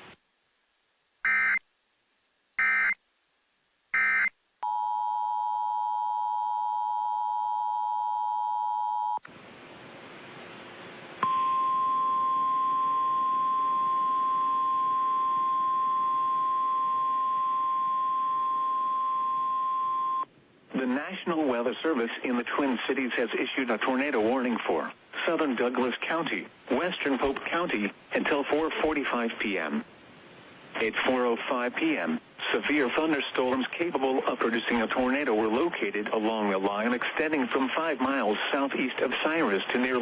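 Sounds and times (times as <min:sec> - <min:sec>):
radio hiss: 0:20.7 - 0:29.9, 0:30.6 - 0:40.0.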